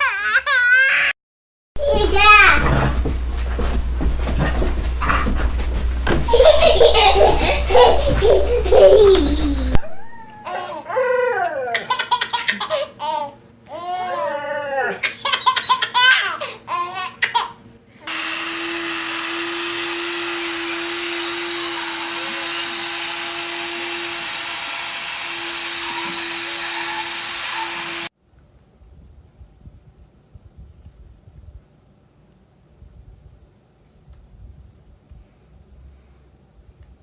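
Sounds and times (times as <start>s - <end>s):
baby laughing: 0.0s - 1.1s, 6.3s - 9.8s, 11.7s - 14.3s, 14.9s - 17.6s
mechanical noise with hum: 1.8s - 37.0s.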